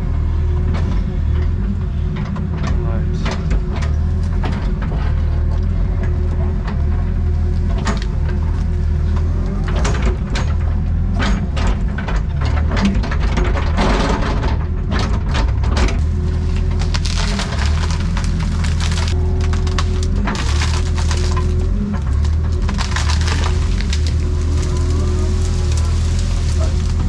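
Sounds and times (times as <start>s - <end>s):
excavator diesel engine running: 0.0s - 27.0s
sharp cracks and knocks: 7.6s - 27.0s.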